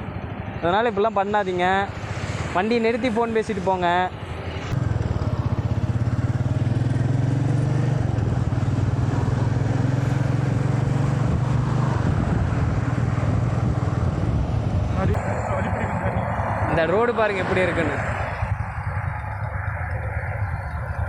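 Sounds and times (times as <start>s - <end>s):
road noise: 0.0s - 21.0s
rushing wind: 0.0s - 21.0s
motorcycle engine running: 4.7s - 16.9s, 17.8s - 21.0s.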